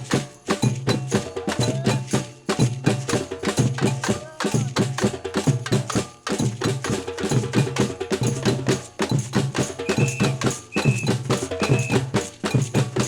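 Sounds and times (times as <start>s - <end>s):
sharp strokes on higher drums: 0.0s - 13.0s
clicking percussion: 8.3s - 13.0s.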